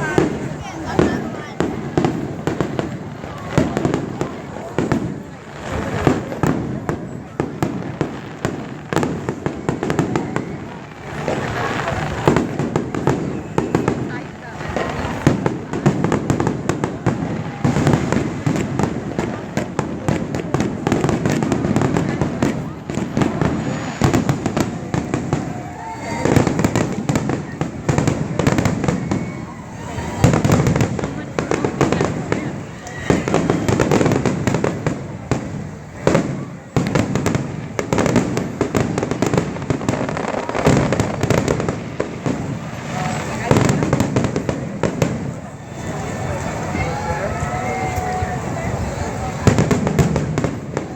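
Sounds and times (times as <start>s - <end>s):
fireworks bangs and crackles: 0.0s - 50.9s.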